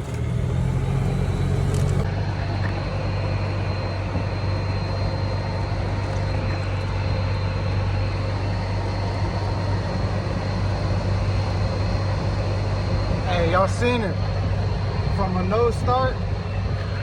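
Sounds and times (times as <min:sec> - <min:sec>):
golf cart engine running: 0:00.0 - 0:02.2.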